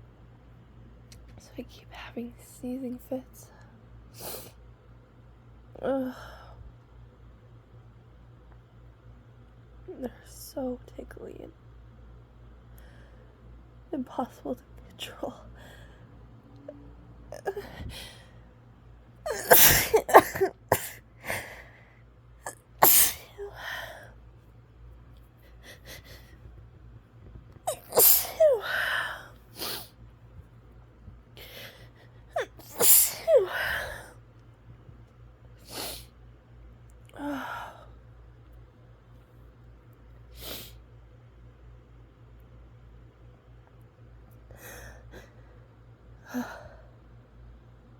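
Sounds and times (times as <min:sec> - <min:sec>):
woman breathing: 0:12.8 - 0:13.5, 0:15.5 - 0:16.2, 0:21.2 - 0:22.1
woman sneezing: 0:19.3 - 0:21.0, 0:22.5 - 0:23.6, 0:27.7 - 0:28.8, 0:32.4 - 0:34.1.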